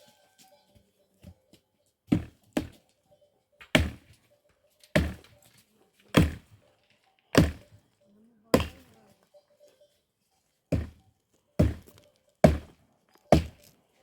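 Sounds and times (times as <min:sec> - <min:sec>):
axe chopping firewood: 0:02.1 - 0:02.8, 0:03.6 - 0:04.2, 0:04.9 - 0:05.4, 0:06.1 - 0:06.6, 0:07.3 - 0:07.8, 0:08.5 - 0:09.0, 0:10.7 - 0:11.0, 0:11.6 - 0:13.8.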